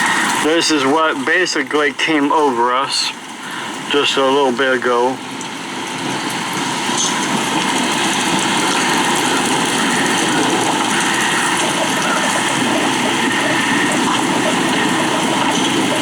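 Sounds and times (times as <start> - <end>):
rain and wind rushing: 0.0 - 16.0.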